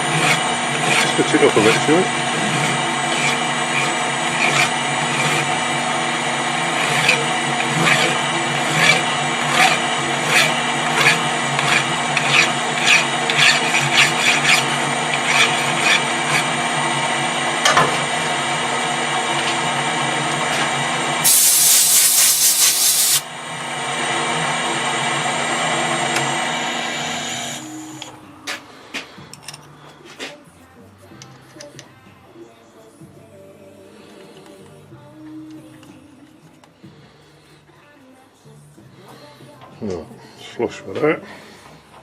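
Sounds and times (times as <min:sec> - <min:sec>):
hand saw rasping on metal: 0:00.0 - 0:05.6, 0:06.8 - 0:16.6
loud hiss: 0:21.2 - 0:23.3.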